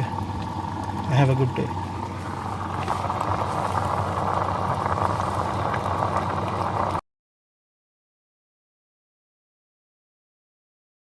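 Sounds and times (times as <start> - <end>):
coffee machine humming and hissing: 0.0 - 7.0.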